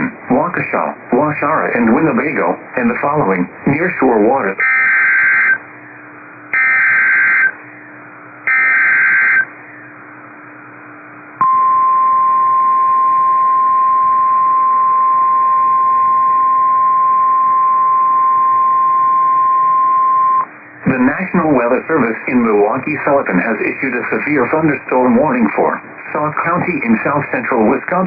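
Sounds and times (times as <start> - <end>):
steady warning alarm tone: 4.6 - 5.6, 6.5 - 7.6, 8.5 - 9.5, 11.4 - 20.5
data tone bursts: 11.4 - 21.0.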